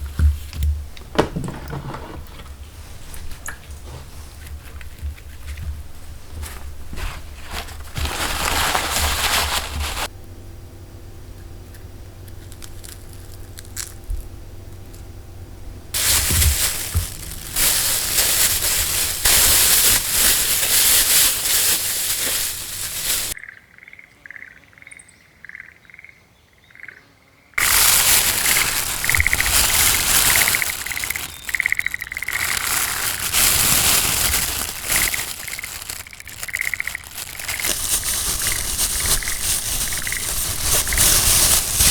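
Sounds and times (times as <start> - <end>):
campfire crackling and hissing: 27.6 - 33.8.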